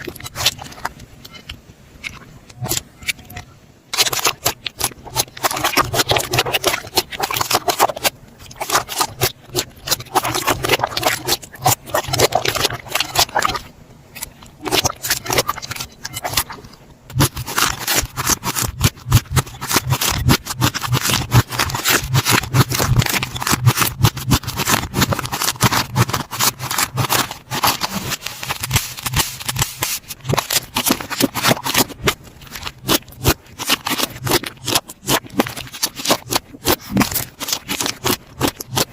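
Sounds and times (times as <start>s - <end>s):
slime squished by hand: 2.5s - 38.9s.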